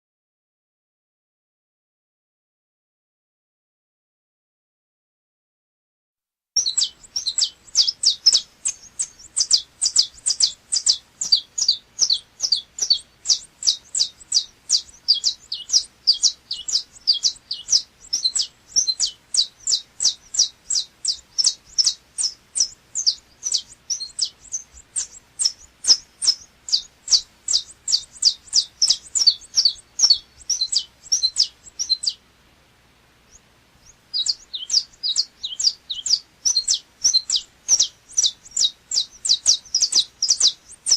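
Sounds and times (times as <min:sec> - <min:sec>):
finch singing high notes: 0:06.6 - 0:32.2.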